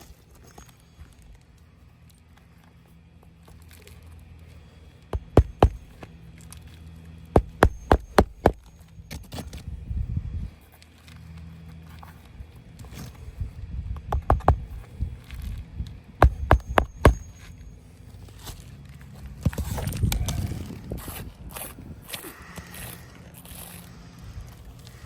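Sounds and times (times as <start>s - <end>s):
hammer striking roofing nails: 5.2s - 6.0s, 7.4s - 8.6s, 14.1s - 14.7s, 16.2s - 17.3s.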